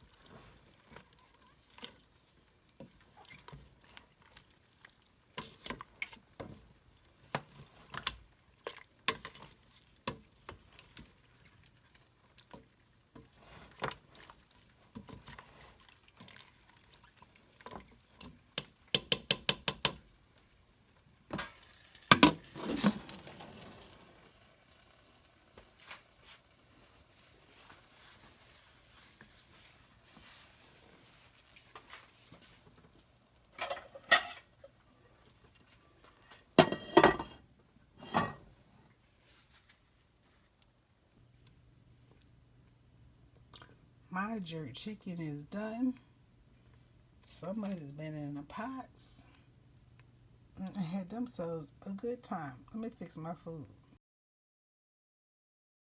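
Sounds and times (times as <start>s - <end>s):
utensils clinking on pots: 33.6s - 34.5s, 36.6s - 37.4s, 38.0s - 38.4s.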